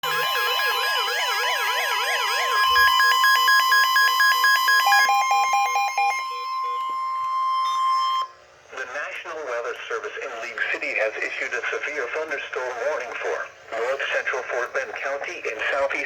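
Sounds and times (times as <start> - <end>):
rapid on-off beeping: 0.0 - 8.4
steady high alarm tone: 0.0 - 8.4
warbling siren-like alarm: 0.0 - 8.4.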